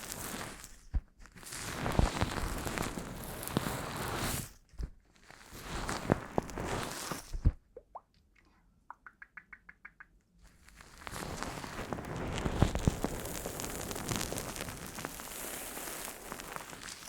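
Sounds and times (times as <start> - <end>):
crackling hiss: 0.0 - 4.6, 10.4 - 17.0
water drops plopping: 8.9 - 10.2
sharp clicks: 8.9 - 10.3.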